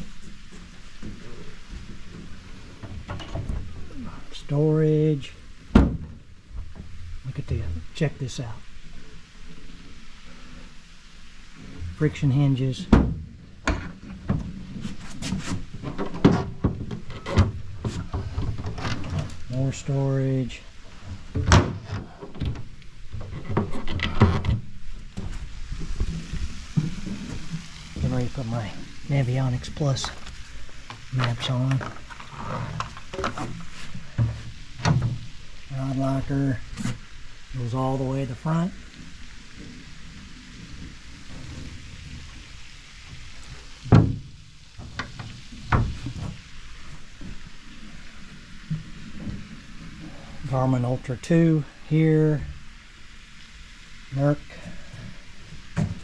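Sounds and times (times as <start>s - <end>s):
low rumbling hiss: 0.0s - 56.0s
hatch lid clunking and rattling: 12.9s - 14.5s.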